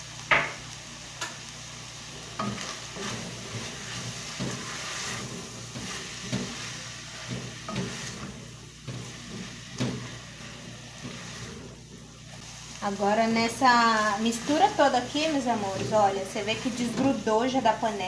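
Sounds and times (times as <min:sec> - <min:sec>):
food sizzling in a pan: 0:00.0 - 0:18.0
spoon scraping a pot: 0:02.4 - 0:11.8.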